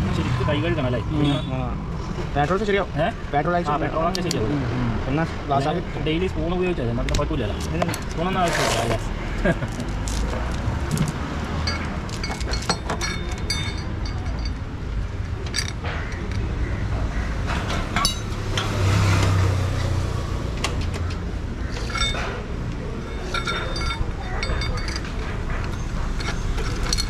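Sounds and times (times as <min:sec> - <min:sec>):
low traffic rumble: 0:00.0 - 0:27.0
metallic clinks of tools: 0:11.6 - 0:14.7, 0:21.8 - 0:22.4, 0:23.0 - 0:27.0.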